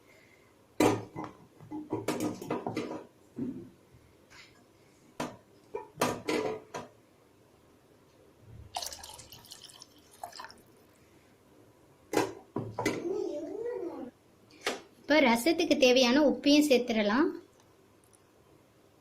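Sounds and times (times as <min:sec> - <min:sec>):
water pouring and dripping into pan: 0:08.7 - 0:10.8.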